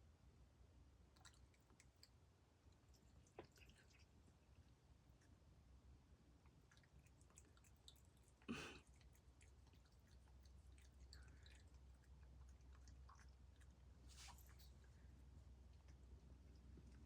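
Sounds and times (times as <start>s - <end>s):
cat chewing bone: 6.4s - 17.0s.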